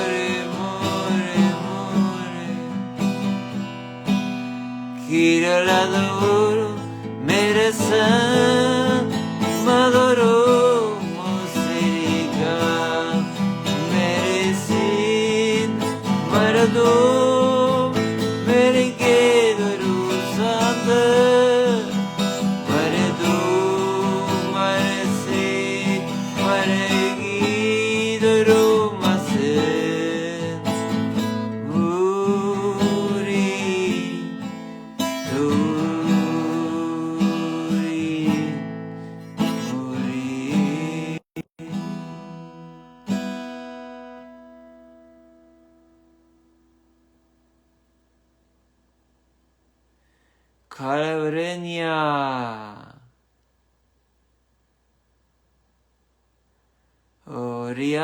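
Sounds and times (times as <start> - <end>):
acoustic guitar strumming: 0.0 - 48.2
person singing long notes: 22.6 - 30.8.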